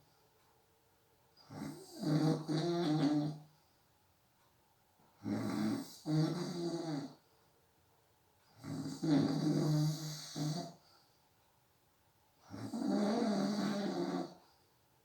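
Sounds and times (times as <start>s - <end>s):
person snoring: 1.5s - 3.4s, 5.2s - 7.2s, 8.6s - 10.8s, 12.5s - 14.4s.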